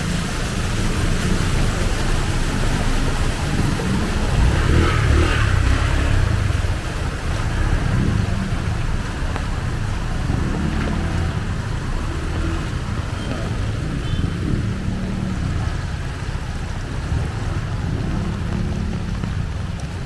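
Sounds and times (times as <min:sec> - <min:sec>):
low rumble: 0:00.0 - 0:20.0
rushing floodwater: 0:00.0 - 0:20.0.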